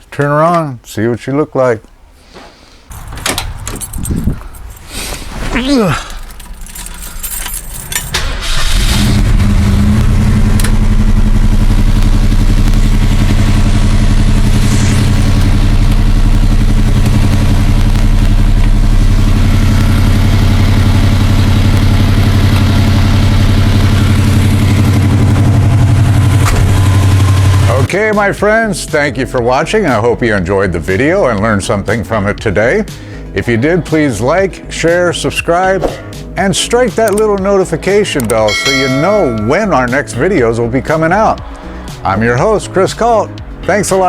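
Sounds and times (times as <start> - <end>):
keys jangling: 2.9 - 8.7
car engine starting and idling: 2.9 - 27.9, 37.0 - 42.8.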